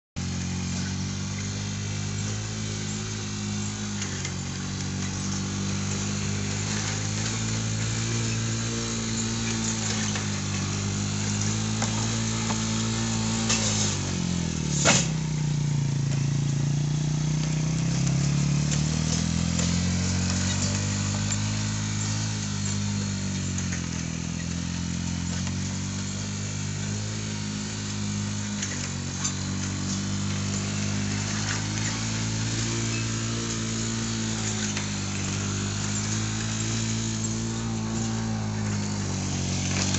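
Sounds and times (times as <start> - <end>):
motor running with wavering pitch: 0.2 - 39.9
sharp snap: 14.7 - 15.2.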